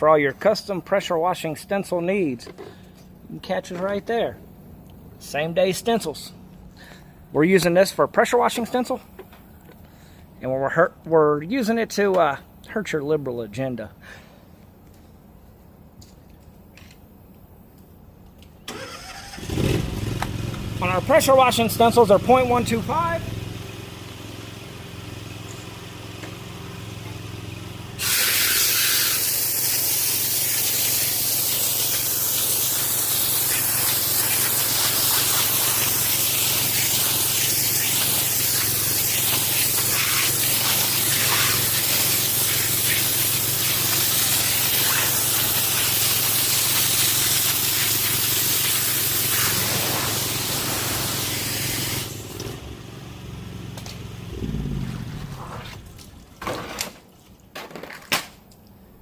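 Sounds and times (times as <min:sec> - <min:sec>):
pressure washer motor hum: 0:18.7 - 0:56.4
water spray hiss: 0:28.0 - 0:52.3.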